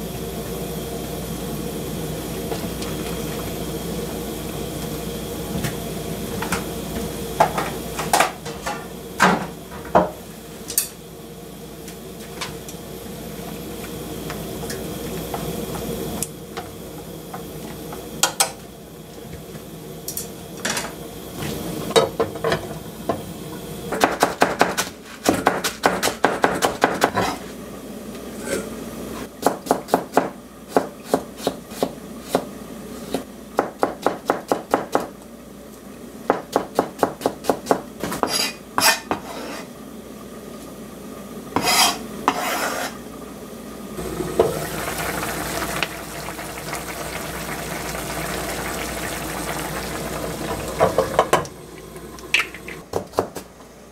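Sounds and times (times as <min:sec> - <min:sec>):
food sizzling: 0:43.9 - 0:52.9.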